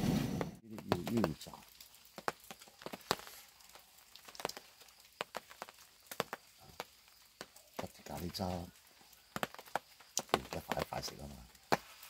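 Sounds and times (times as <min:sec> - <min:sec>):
faint background hiss: 0:00.0 - 0:12.0
sharp ticks and taps: 0:00.8 - 0:03.3, 0:04.2 - 0:08.6, 0:09.3 - 0:11.9.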